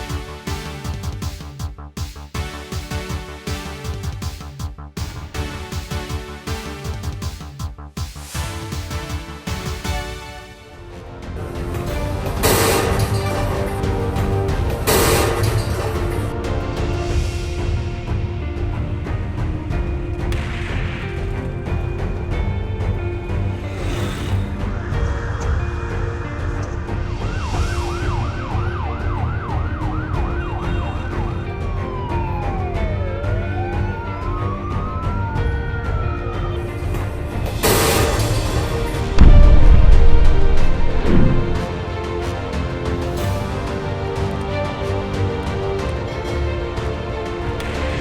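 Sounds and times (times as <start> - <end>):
instrumental music with low beat: 0.0 - 48.0
emergency siren yelp and wail: 25.0 - 42.2
steady low rumble: 39.0 - 42.1.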